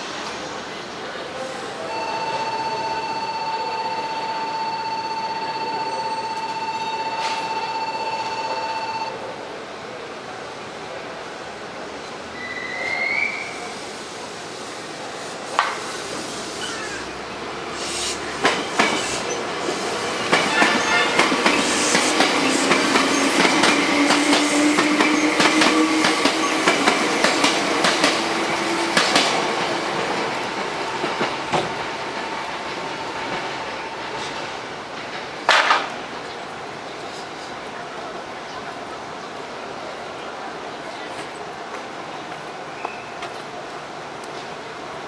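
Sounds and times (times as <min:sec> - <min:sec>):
train wheels clattering over rails: 0:17.8 - 0:36.2.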